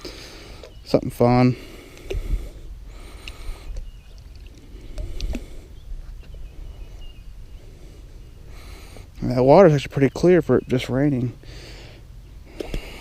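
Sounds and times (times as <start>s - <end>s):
water lightly sloshing: 1.9s - 6.5s.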